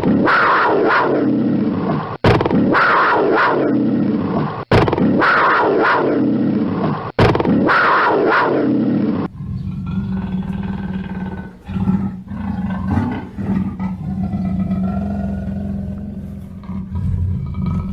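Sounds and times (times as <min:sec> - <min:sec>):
panther growling: 0:07.9 - 0:17.9.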